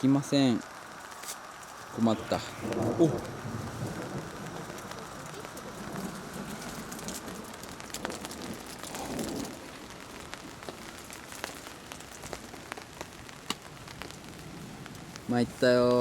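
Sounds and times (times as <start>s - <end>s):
raindrops ticking on a surface: 0.0s - 2.0s, 2.6s - 16.0s
steady rain falling: 0.0s - 16.0s.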